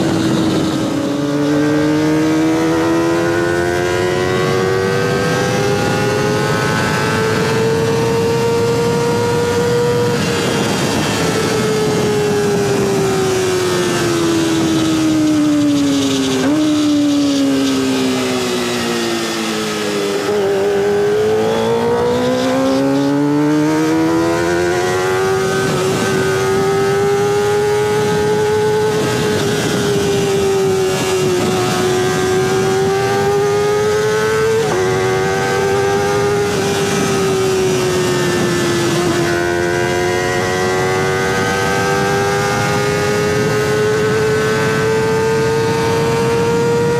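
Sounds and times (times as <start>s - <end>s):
motorcycle engine at high revs: 0.0s - 46.9s.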